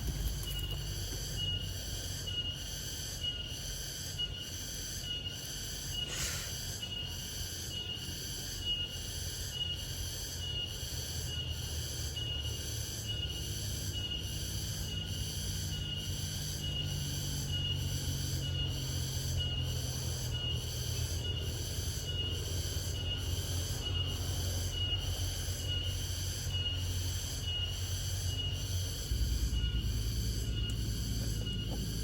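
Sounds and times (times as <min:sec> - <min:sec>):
cricket trilling: 0:00.0 - 0:32.0
low rumble: 0:25.0 - 0:32.0.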